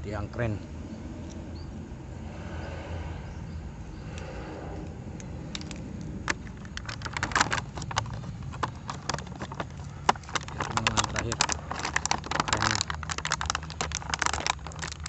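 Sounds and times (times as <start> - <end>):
low steady hum: 0.0 - 15.0
plastic toy pieces clicking: 5.6 - 15.0.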